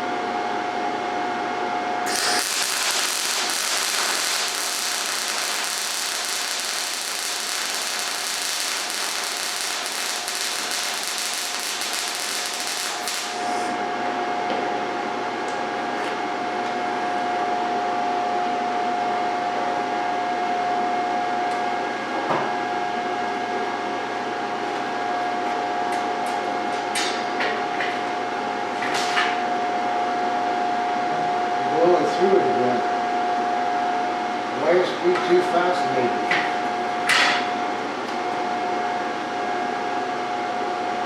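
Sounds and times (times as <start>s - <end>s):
whirring hum with high tone: 0.0s - 41.0s
welder arc crackling: 2.1s - 13.8s.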